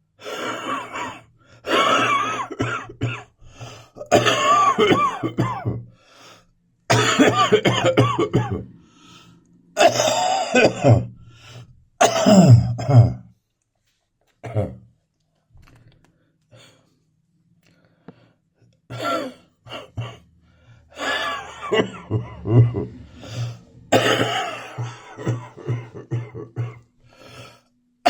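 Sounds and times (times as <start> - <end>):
person coughing: 0.3 - 3.3, 4.0 - 5.8, 6.9 - 8.7, 9.8 - 11.1, 12.0 - 13.2, 14.5 - 14.8, 18.9 - 20.2, 21.0 - 26.8.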